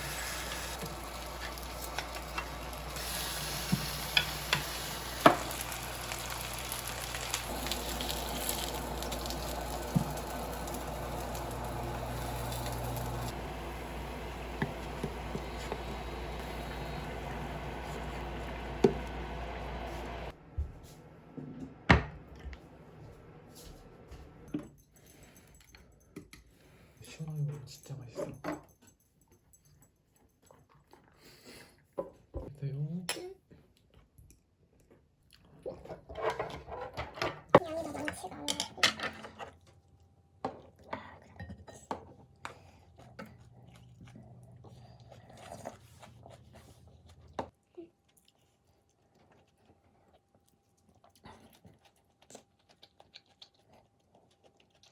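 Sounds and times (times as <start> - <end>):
chewing: 29.4 - 31.9, 33.5 - 36.2, 39.5 - 54.9.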